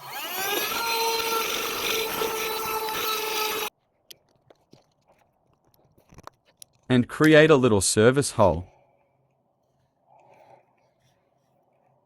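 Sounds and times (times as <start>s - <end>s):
grinding rasp: 0.0s - 3.7s
rotary power tool whining: 0.0s - 3.7s.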